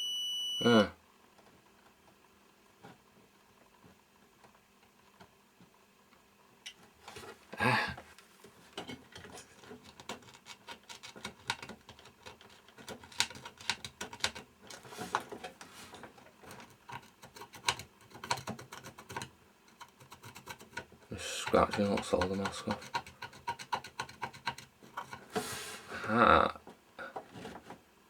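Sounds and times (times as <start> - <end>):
tool scraping circuit board: 9.2 - 15.2, 16.4 - 25.8.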